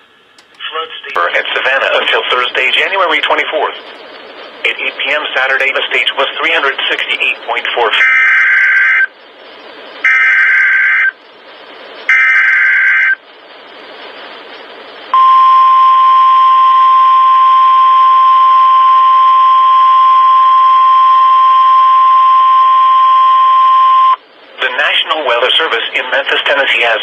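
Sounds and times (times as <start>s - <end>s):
radio hiss: 0.6s - 10.2s, 24.1s - 27.0s
steady warning alarm tone: 0.7s - 27.0s
screeching digital data tones: 1.2s - 15.6s.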